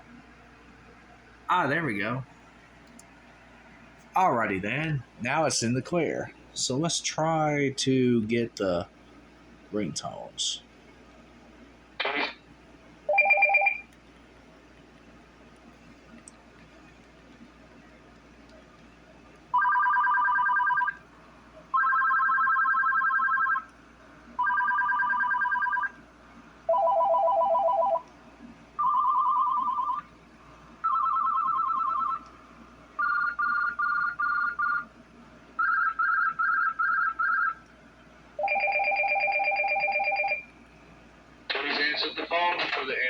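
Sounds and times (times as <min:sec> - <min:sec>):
cordless phone electronic rings: 0:13.1 - 0:13.8, 0:19.5 - 0:21.0, 0:21.7 - 0:23.6, 0:24.4 - 0:25.9, 0:26.7 - 0:28.0, 0:28.8 - 0:30.0, 0:30.8 - 0:32.2, 0:33.0 - 0:34.8, 0:35.6 - 0:37.6, 0:38.4 - 0:40.5.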